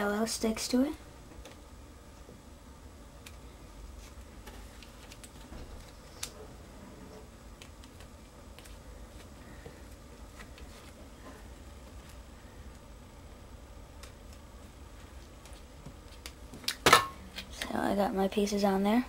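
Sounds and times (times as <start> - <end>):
low steady hum: 0.0 - 19.0.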